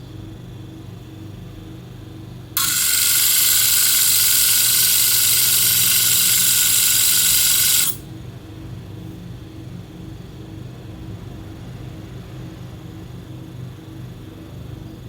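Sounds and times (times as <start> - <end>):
high-pitched blade grinding: 2.6 - 8.0.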